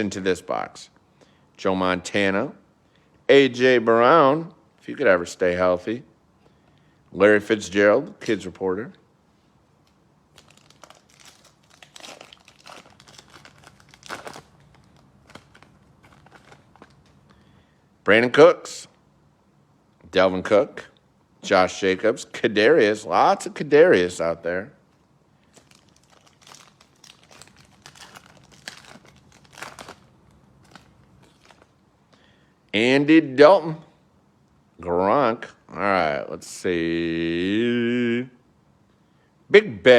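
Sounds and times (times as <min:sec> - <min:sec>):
card wrapper crinkling: 0:09.8 - 0:17.4, 0:25.4 - 0:31.8.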